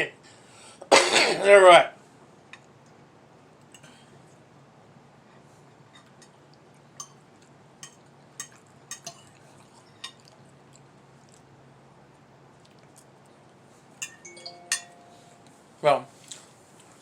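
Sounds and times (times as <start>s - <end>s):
cutlery clinking on a plate: 7.8s - 9.3s, 14.0s - 15.1s.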